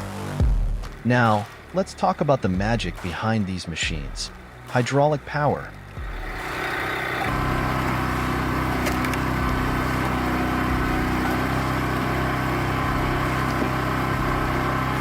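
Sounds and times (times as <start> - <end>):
hydraulic power unit running: 0.0 - 15.0.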